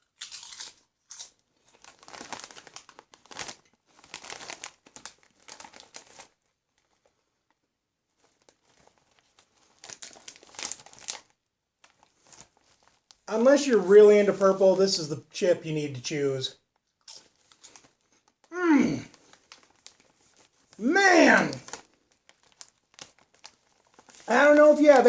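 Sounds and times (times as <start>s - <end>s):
chip bag crinkling: 0.2s - 6.9s, 8.2s - 13.0s, 17.1s - 18.0s, 19.1s - 25.0s.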